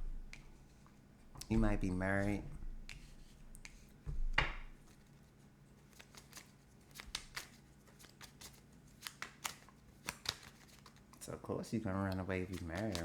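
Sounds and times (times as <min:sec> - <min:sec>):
cards clicking and tapping: 0:08.2 - 0:11.0, 0:12.1 - 0:13.0.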